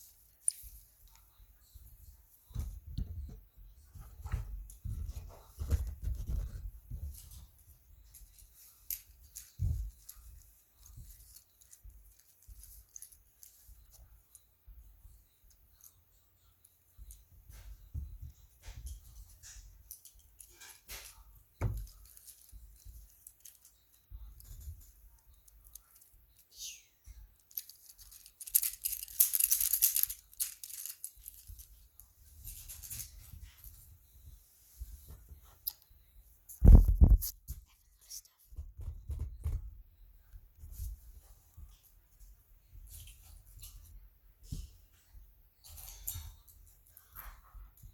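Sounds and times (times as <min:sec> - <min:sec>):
fidget toys scratchy rustling: 0:05.2 - 0:14.0, 0:21.8 - 0:26.7, 0:27.4 - 0:33.8
fidget toys rubbing and scraping: 0:27.4 - 0:31.8.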